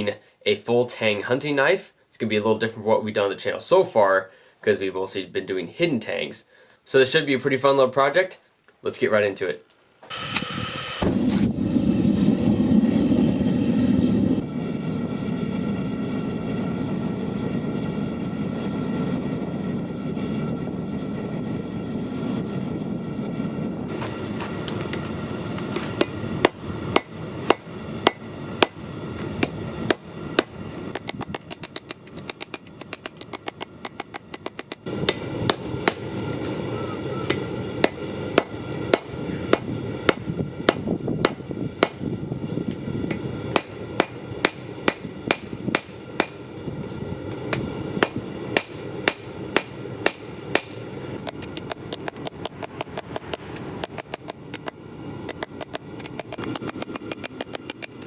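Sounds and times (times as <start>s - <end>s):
steady low rumble: 10.5s - 58.0s
hammer striking steel on anvil: 26.0s - 28.8s, 29.4s - 36.0s, 37.3s - 42.1s, 43.5s - 46.5s, 47.5s - 58.0s.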